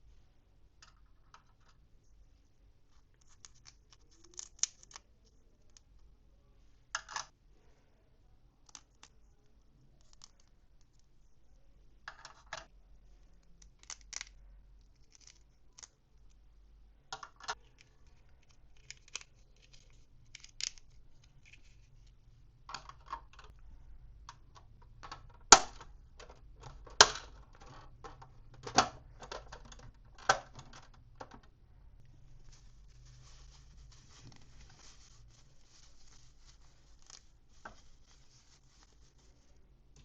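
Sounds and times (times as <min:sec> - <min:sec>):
packaging crinkling and rustling: 0:32.1 - 0:39.6.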